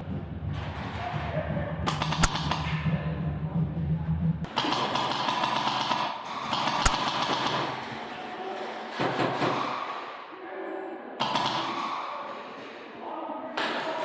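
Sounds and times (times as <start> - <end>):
airsoft gunfire bursts: 1.9 - 2.5.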